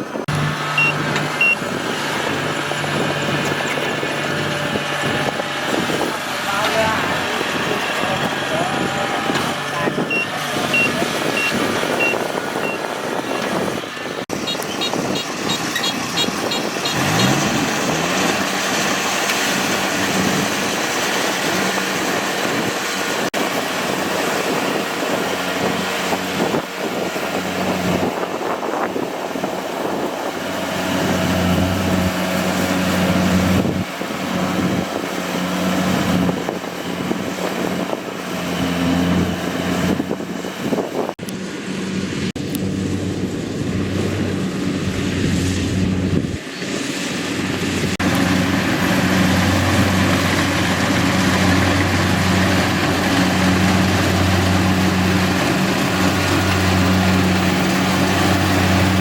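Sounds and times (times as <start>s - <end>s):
combine harvester engine running: 0.0s - 59.0s
short electronic beeps: 0.8s - 1.6s, 10.1s - 12.8s.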